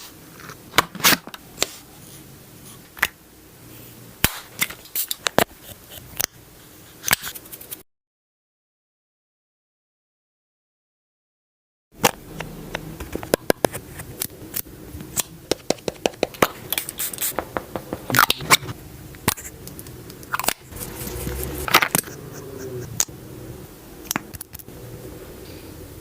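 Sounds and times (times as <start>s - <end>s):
scratchy strokes: 20.6s - 23.0s.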